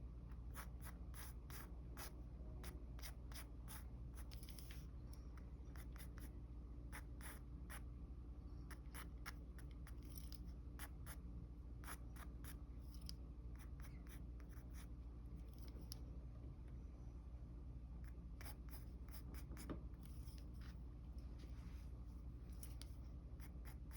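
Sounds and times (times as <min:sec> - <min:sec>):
pencil scratching on paper: 0:00.4 - 0:04.8, 0:18.1 - 0:20.7, 0:22.6 - 0:23.9.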